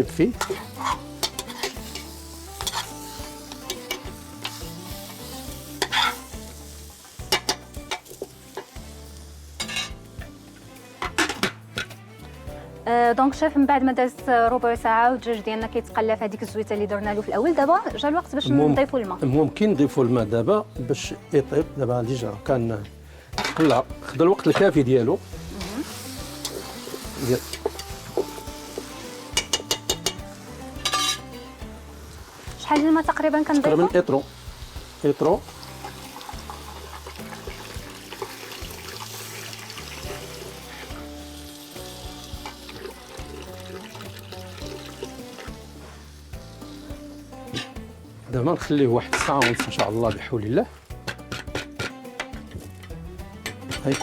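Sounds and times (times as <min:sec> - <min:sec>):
chicken sizzling in oil: 0:00.0 - 0:12.8, 0:17.0 - 0:54.0
utensil clinking against metal pot: 0:00.4 - 0:01.8, 0:07.3 - 0:08.7, 0:29.3 - 0:31.3.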